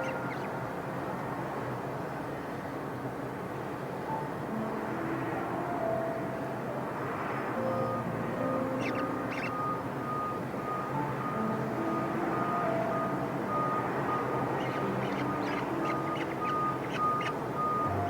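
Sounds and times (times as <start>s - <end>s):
engine and traffic rumble: 6.3s - 18.0s
reversing alarm beeping: 9.4s - 14.8s, 15.9s - 18.0s.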